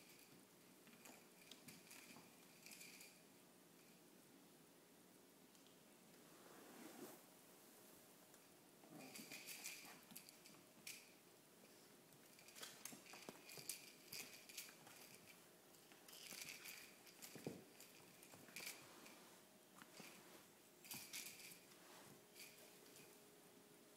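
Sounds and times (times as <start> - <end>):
puppy scuffling with a toy: 0.0 - 3.2, 8.8 - 23.2.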